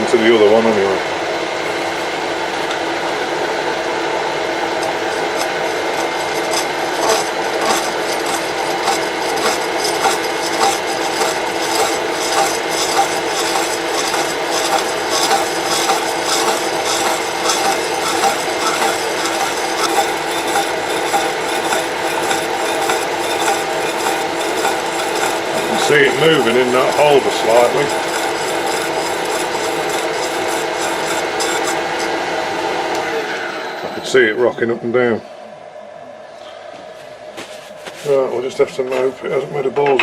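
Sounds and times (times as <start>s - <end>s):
milling machine hum: 0.0s - 39.8s
saw teeth rasping ticks: 4.8s - 32.1s.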